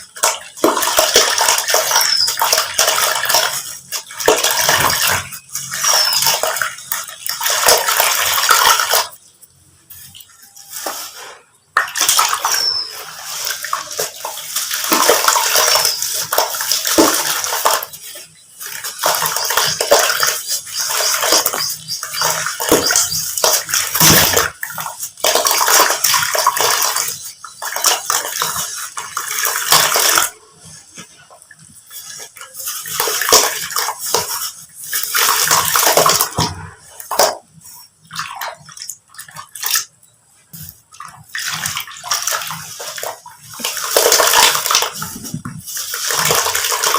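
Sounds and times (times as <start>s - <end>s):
dry cement crumbling: 11.8s - 30.4s.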